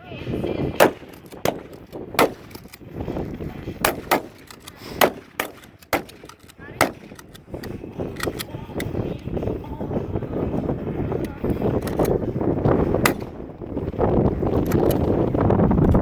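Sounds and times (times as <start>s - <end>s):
shotguns firing: 0.7s - 2.8s, 3.6s - 8.5s, 12.9s - 13.5s.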